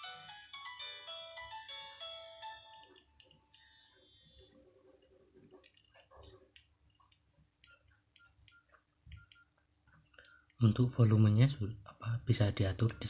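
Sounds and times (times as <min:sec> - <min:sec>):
phone ringtone melody: 0:00.0 - 0:04.5.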